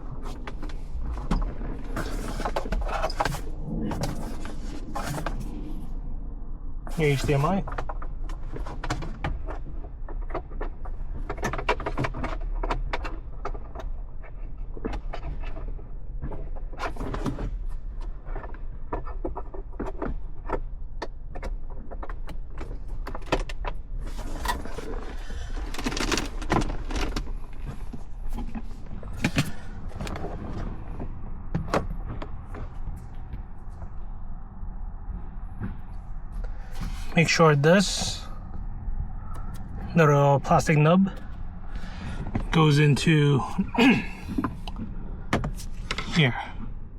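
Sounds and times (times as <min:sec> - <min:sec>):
steady low hum: 0:00.0 - 0:46.9
plastic parts clicking and rattling: 0:22.0 - 0:30.7.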